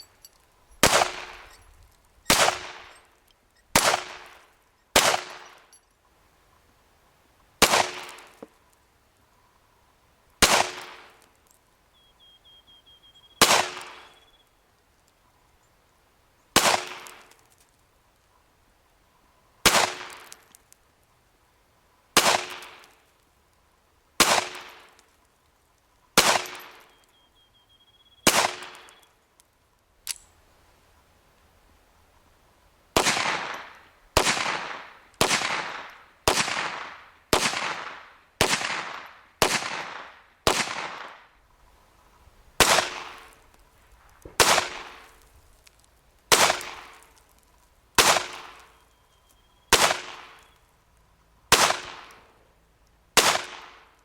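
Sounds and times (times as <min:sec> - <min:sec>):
pistol shots with echo: 0:00.8 - 0:01.6, 0:02.3 - 0:03.0, 0:03.8 - 0:04.4, 0:05.0 - 0:05.6, 0:10.4 - 0:11.1, 0:13.4 - 0:14.1, 0:16.6 - 0:17.2, 0:24.2 - 0:24.8, 0:26.2 - 0:26.8, 0:28.3 - 0:28.9, 0:33.0 - 0:41.2, 0:42.6 - 0:43.4, 0:44.2 - 0:45.1, 0:46.3 - 0:47.0, 0:48.0 - 0:48.7, 0:49.7 - 0:50.5, 0:51.5 - 0:52.2, 0:53.2 - 0:53.8.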